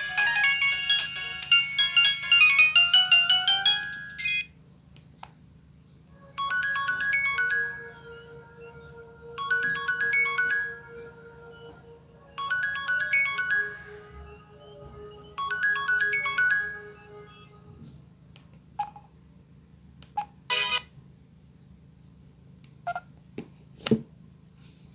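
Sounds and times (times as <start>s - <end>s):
phone ringtone melody: 0.0s - 4.5s, 6.2s - 17.8s, 20.5s - 20.8s.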